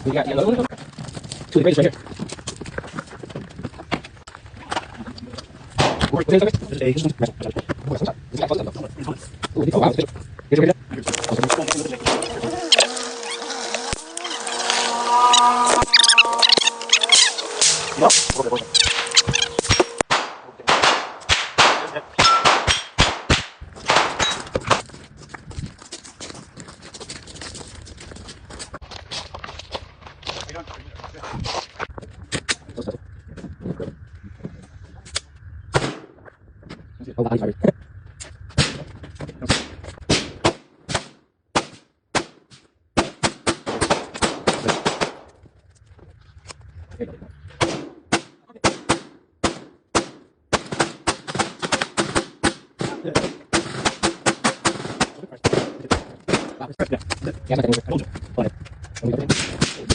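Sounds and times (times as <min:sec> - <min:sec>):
gunshots: 0:05.8 - 0:06.1, 0:11.1 - 0:12.5, 0:16.5 - 0:24.8, 0:35.7 - 0:36.1, 0:38.6 - 0:42.4, 0:43.0 - 0:45.3, 0:47.6 - 0:56.7, 0:59.2 - 0:59.9
rapid gunfire: 0:20.0 - 0:24.2, 0:43.0 - 0:45.2, 0:47.6 - 0:56.6.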